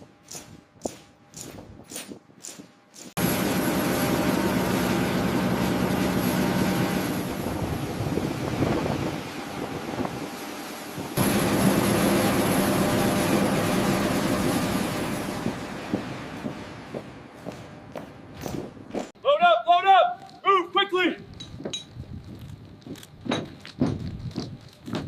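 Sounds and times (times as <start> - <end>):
low hum: 3.2 - 18.3
aircraft engines droning: 3.2 - 18.8.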